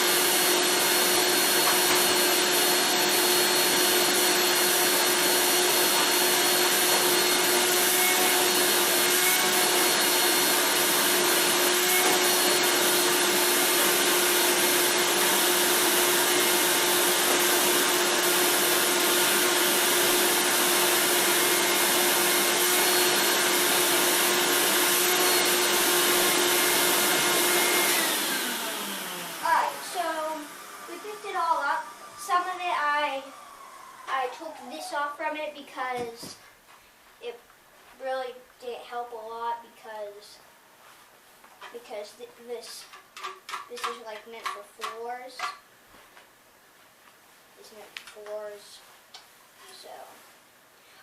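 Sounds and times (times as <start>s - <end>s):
vacuum cleaner running: 0.0s - 35.2s.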